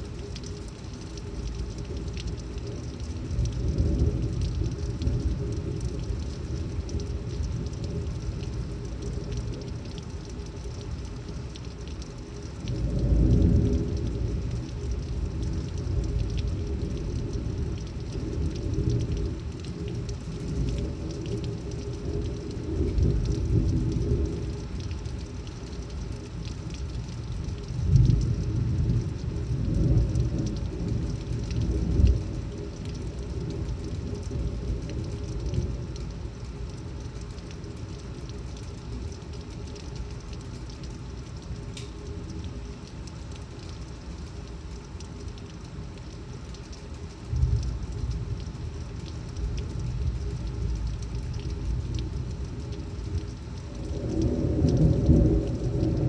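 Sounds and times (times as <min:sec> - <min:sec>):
heavy rain pouring: 0:00.0 - 0:56.0
rain drop ticks: 0:00.0 - 0:56.0
thunder rumbles: 0:01.4 - 0:10.3, 0:12.6 - 0:36.0, 0:51.1 - 0:56.0.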